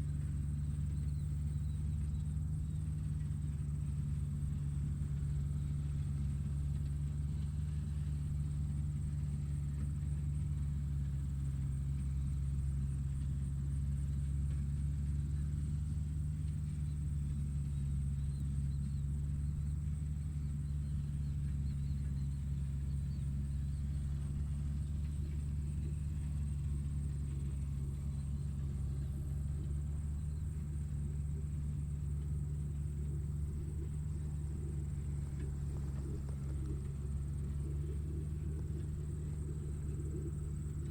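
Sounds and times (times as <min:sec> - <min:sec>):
heavy machinery rumbling: 0:16.6 - 0:40.9.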